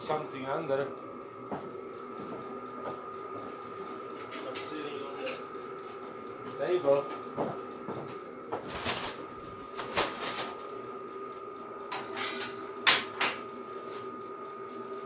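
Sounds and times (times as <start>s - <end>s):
heater blower whine: 0.0s - 15.0s.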